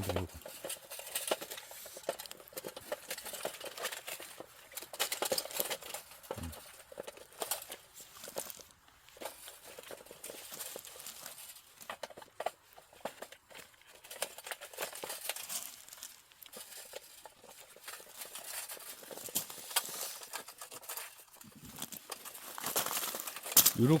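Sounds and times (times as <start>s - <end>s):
wood sticks knocking and scraping: 0.0s - 24.0s.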